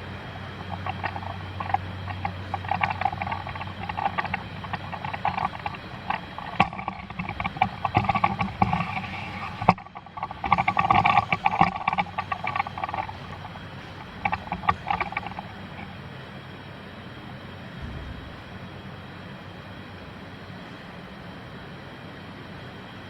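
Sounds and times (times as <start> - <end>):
clicks knocks and clatter: 0.4 - 16.0.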